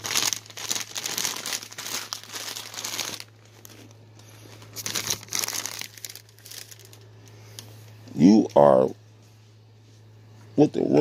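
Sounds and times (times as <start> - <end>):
crinkling and rustling: 0.0 - 8.0
steady low hum: 0.0 - 11.0.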